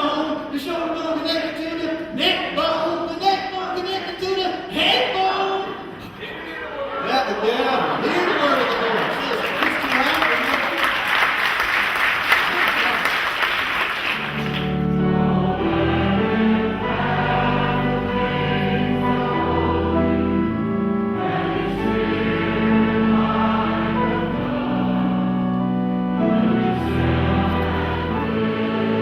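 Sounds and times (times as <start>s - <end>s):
applause: 8.5s - 14.8s
choir singing church music: 13.6s - 29.0s.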